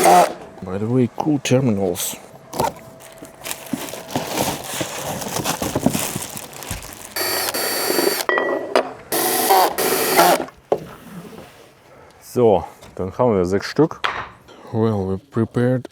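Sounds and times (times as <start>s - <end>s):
loud harsh bursts: 0.0s - 0.4s, 7.1s - 8.3s, 9.1s - 10.5s
packaging rustling and clicking: 2.5s - 8.3s.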